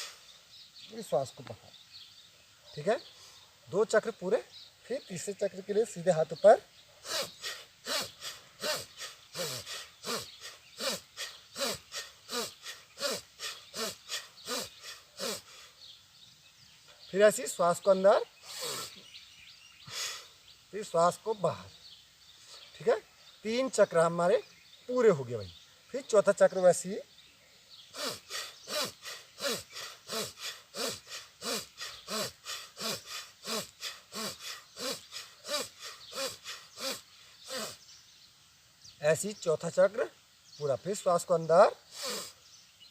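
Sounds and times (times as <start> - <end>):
forceful breathing through nose: 0.0 - 0.3, 7.0 - 15.9, 18.4 - 19.1, 19.8 - 20.3, 27.9 - 37.8, 41.9 - 42.4.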